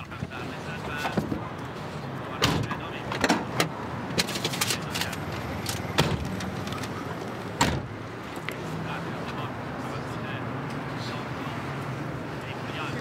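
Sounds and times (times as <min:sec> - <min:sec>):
car running steadily: 0:00.0 - 0:13.0.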